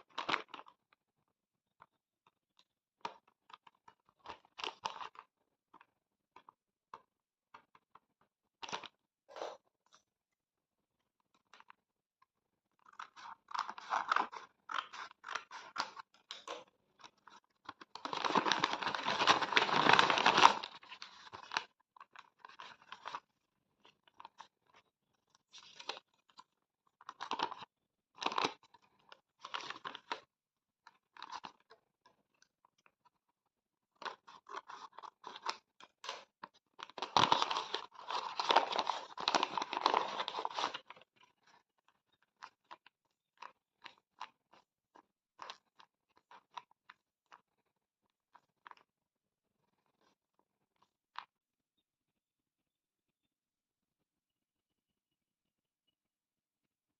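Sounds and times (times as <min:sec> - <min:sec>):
paper crinkling and rustling: 0:12.9 - 0:23.3, 0:34.0 - 0:41.6.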